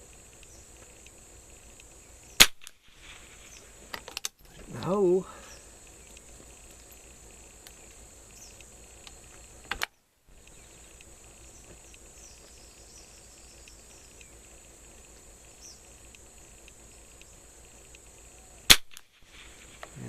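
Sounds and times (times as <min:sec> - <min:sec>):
sharp crack: 0:01.8 - 0:05.0, 0:17.9 - 0:20.0
high-pitched insect drone: 0:10.3 - 0:18.7.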